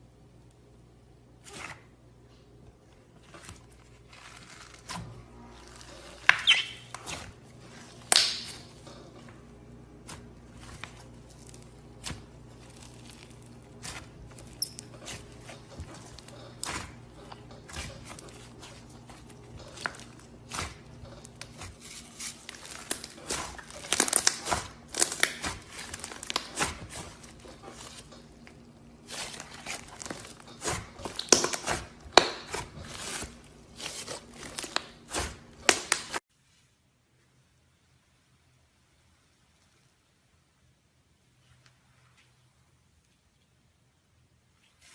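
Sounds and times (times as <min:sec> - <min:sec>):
slime clicking and crackling: 0:17.7 - 0:27.1.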